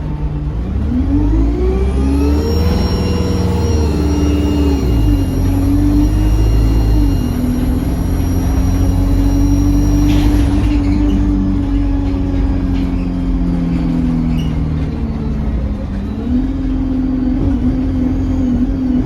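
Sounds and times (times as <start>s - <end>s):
bus diesel engine: 0.0s - 19.0s
high turbocharger whistle: 1.8s - 10.9s.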